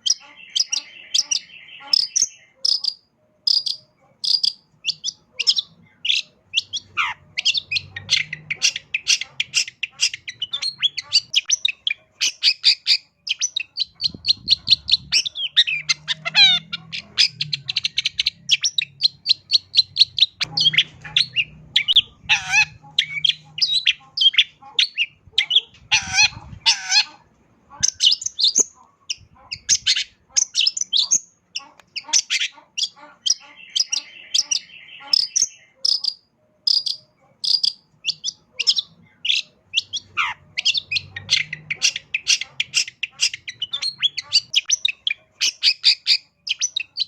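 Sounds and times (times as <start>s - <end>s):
bird singing varied song: 0.0s - 47.0s.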